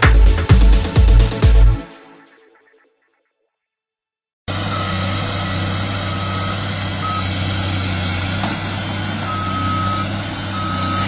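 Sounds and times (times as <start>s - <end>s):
excavator engine running: 4.5s - 11.0s
travel alarm beeping: 9.3s - 11.0s.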